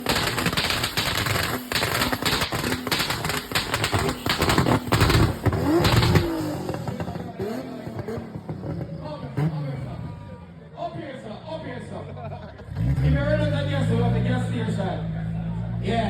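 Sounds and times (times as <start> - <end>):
car audio crackling clatter: 0.0 - 9.9.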